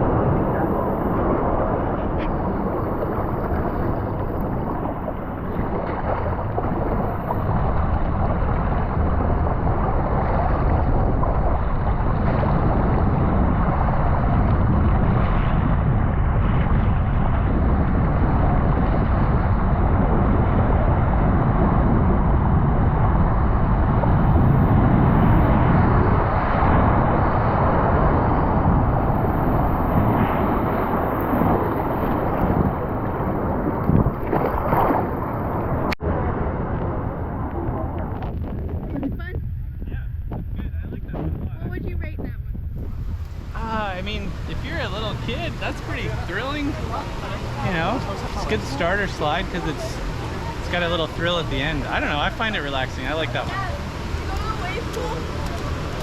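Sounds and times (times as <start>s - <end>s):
water rushing down a slide: 0.0s - 39.0s
wind buffeting microphone: 0.0s - 56.0s.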